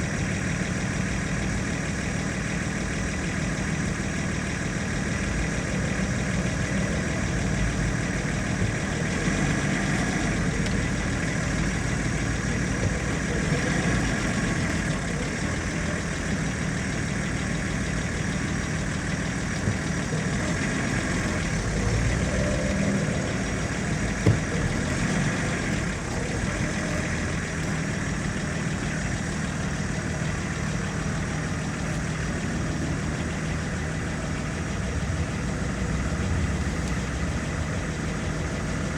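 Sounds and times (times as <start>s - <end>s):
vehicle engine idling: 0.0s - 38.9s.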